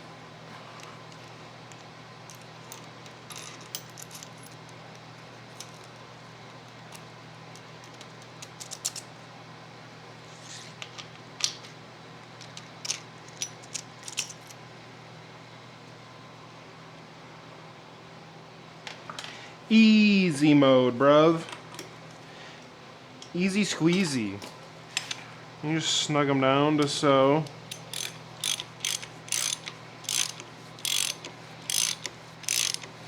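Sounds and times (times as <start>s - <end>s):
metal parts and tools clinking: 2.3s - 4.6s, 12.4s - 14.5s, 27.7s - 33.0s.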